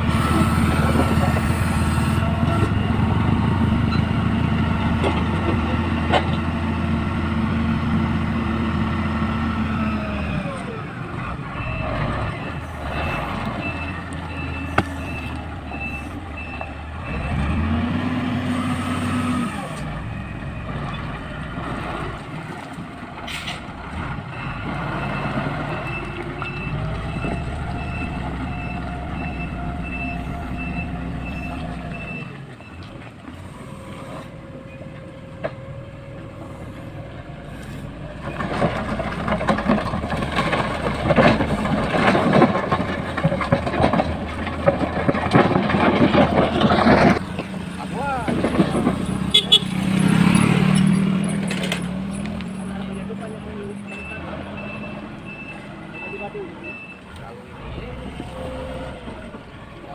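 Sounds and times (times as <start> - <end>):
diesel engine under load: 0.0 - 59.9
reversing alarm beeping: 0.4 - 4.4, 11.6 - 17.6, 24.3 - 32.9, 53.8 - 57.0.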